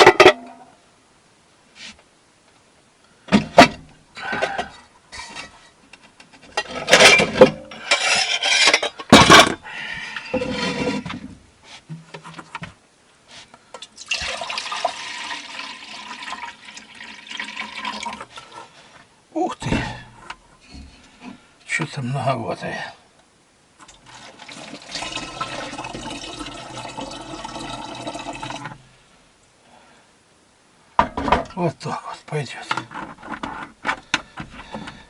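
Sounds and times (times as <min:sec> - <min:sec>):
pots and utensils clanking: 0:00.0 - 0:00.6, 0:06.4 - 0:09.6, 0:10.2 - 0:11.2
liquid pouring into a pot: 0:13.9 - 0:18.3, 0:24.0 - 0:28.8.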